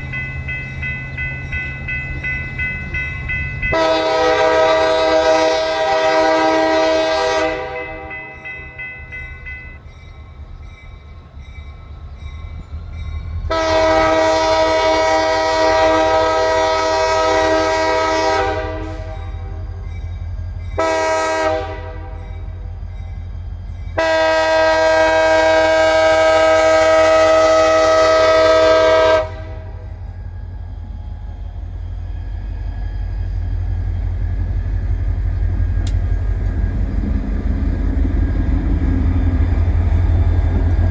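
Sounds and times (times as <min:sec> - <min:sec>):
locomotive air horn blasts: 0:03.7 - 0:08.4, 0:13.5 - 0:19.6, 0:20.8 - 0:22.2, 0:24.0 - 0:29.8
locomotive engine rumble: 0:09.6 - 0:40.9.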